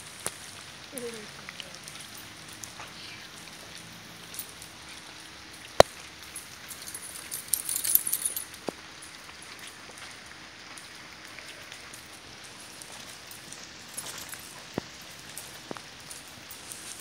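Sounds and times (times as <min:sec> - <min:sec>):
rain pattering: 0:00.0 - 0:17.0
high metallic jingling: 0:06.3 - 0:08.6.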